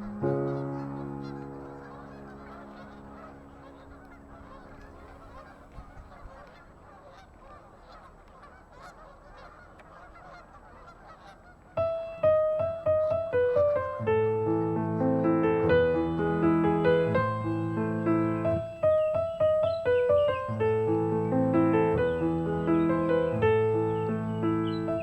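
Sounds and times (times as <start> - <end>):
held musical chord: 0.0 - 5.4, 11.8 - 25.0
piano music: 0.0 - 5.7, 11.8 - 25.0
geese calling: 0.0 - 25.0.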